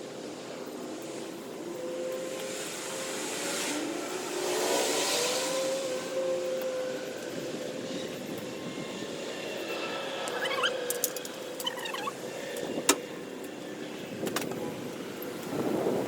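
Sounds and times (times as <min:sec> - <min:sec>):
vehicle engine passing by: 0:02.2 - 0:07.0.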